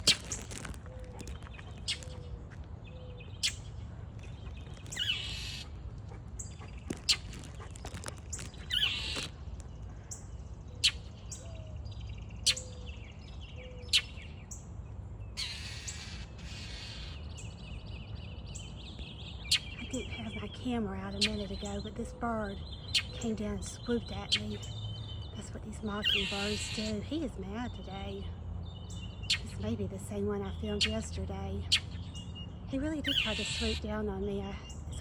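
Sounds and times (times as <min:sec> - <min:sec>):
harsh rasping bird calls: 0:00.0 - 0:11.5, 0:15.3 - 0:35.0
bird chack calls: 0:03.4 - 0:09.5, 0:33.0 - 0:33.8.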